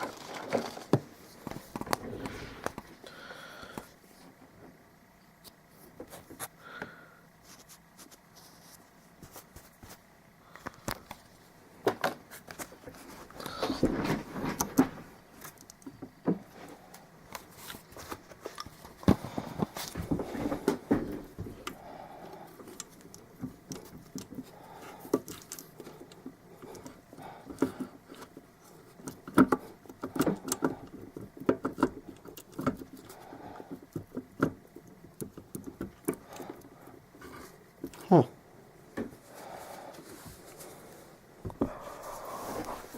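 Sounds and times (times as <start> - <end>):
hand tools clicking and tapping: 17.3 - 38.0.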